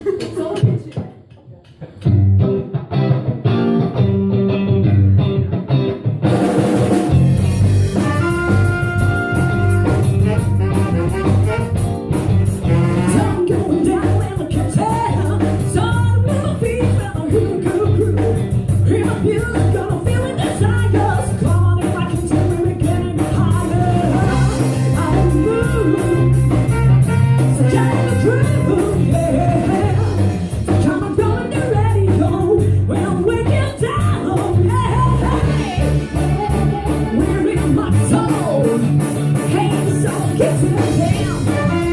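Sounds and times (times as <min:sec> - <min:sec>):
bass guitar: 0:01.8 - 0:41.9
drum kit and cymbals: 0:06.3 - 0:41.9
person singing: 0:12.6 - 0:41.9.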